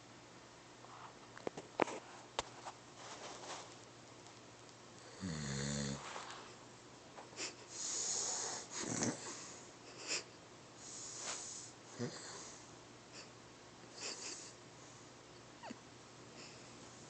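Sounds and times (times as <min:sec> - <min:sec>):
person snoring: 0:05.1 - 0:06.1, 0:11.1 - 0:12.6
hissing breath: 0:07.4 - 0:10.2, 0:10.8 - 0:12.6.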